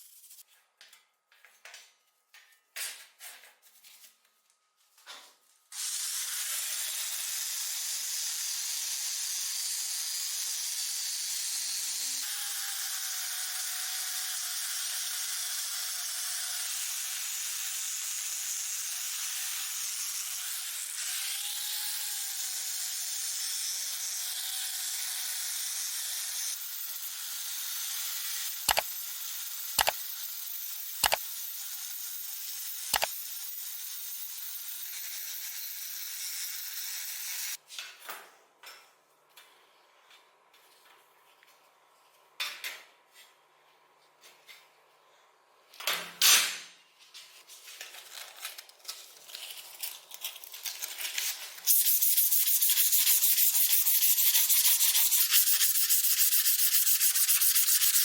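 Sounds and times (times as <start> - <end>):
sharp clicks: 28.7 - 28.9
hissing spray: 51.7 - 58.0.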